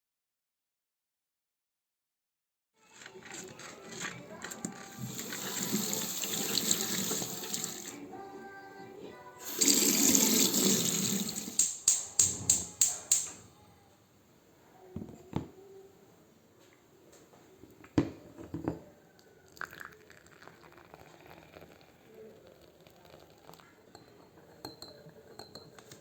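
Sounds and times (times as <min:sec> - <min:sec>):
tap water running into sink: 0:04.9 - 0:08.0, 0:09.4 - 0:13.3
sharp clicks: 0:11.5 - 0:13.4.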